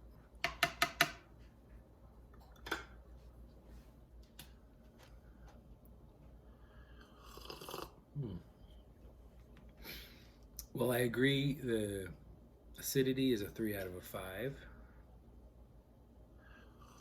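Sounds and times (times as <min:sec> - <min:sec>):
slurping sip of coffee: 0:07.0 - 0:08.0
person humming low mm: 0:08.2 - 0:08.6.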